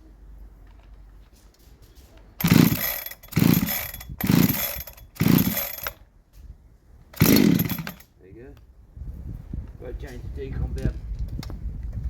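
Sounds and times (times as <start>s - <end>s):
chainsaw engine turning over: 2.4s - 6.0s, 7.2s - 8.1s
starter cord yanked: 7.2s - 8.0s.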